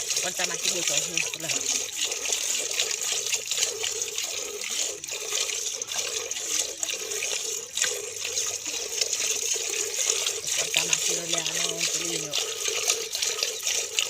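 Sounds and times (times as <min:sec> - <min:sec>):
milk squirting into a pail: 0:00.0 - 0:14.0.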